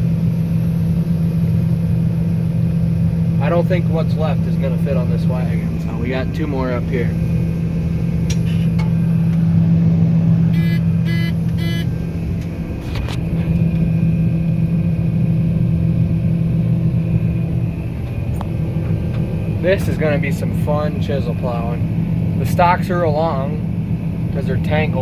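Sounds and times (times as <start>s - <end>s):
combine harvester engine humming: 0.0s - 25.0s
short electronic beeps: 10.5s - 11.9s.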